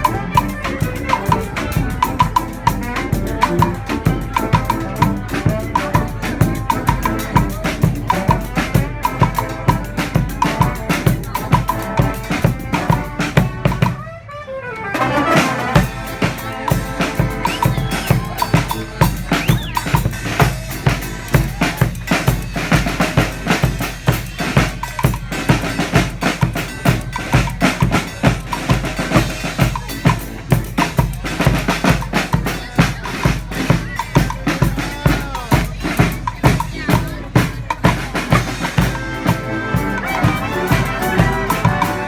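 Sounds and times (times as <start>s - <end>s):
bass drum and snare beat: 0.0s - 14.0s, 15.0s - 42.0s
horns playing: 0.0s - 24.7s, 37.2s - 42.0s.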